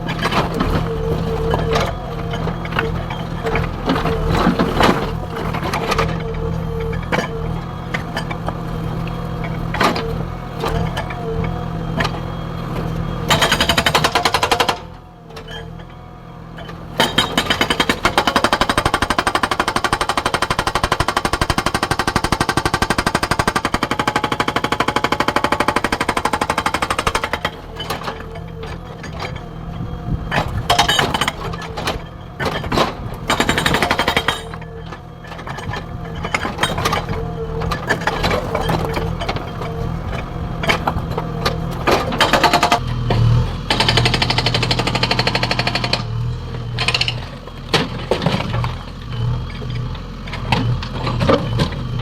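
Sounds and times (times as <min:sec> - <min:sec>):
diesel engine humming: 0:00.0 - 0:52.0
hydraulic breaker hammering: 0:13.2 - 0:15.8, 0:16.6 - 0:49.0.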